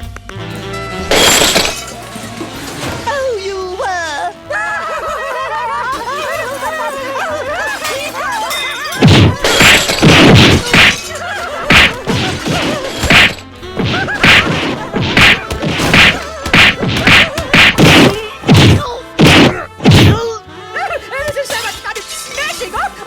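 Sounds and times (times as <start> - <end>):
music: 0.0 - 23.0
laughter: 4.6 - 8.4, 11.1 - 12.9
cartoon fight whacks and thuds: 9.0 - 11.1, 11.7 - 20.2.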